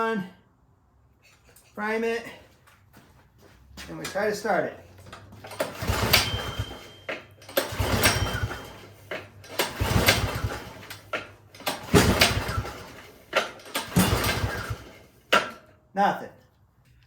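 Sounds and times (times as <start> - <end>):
engine turning over chugging whirr: 4.8 - 15.7
recoil pull-starter yanked: 5.0 - 15.6.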